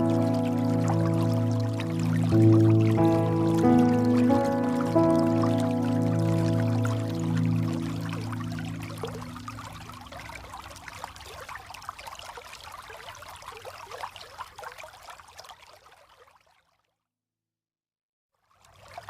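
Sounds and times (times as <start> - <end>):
held musical chord: 0.0 - 10.4
water trickling and splashing: 0.0 - 17.0, 18.4 - 19.0.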